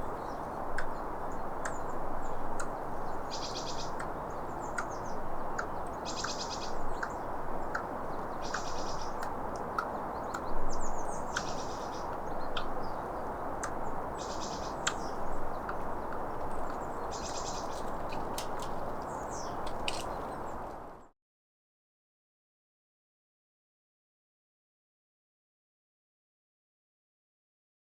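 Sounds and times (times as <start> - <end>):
squirrel clicking calls: 0.0 - 20.6
steady background hiss: 0.0 - 21.0.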